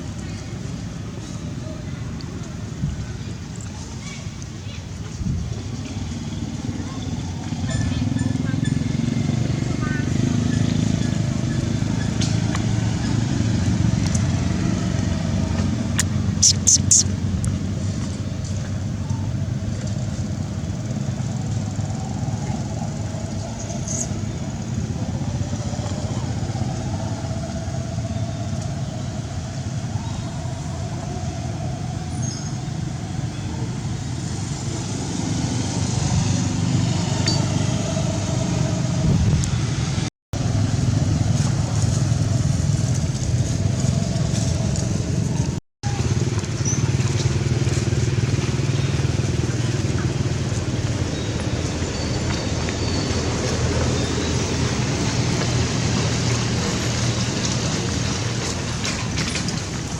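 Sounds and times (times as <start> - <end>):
road traffic hum: 0.0 - 59.9.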